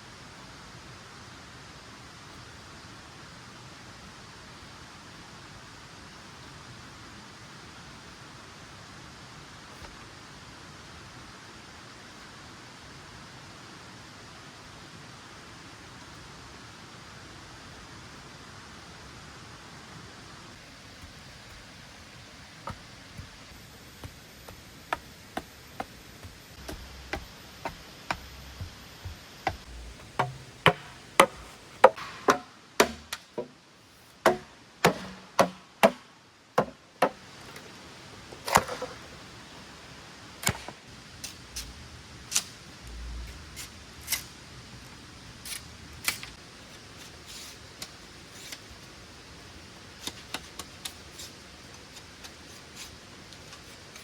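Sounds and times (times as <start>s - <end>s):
hand tool chopping wood: 22.7s - 33.5s, 34.2s - 36.0s, 36.6s - 37.2s.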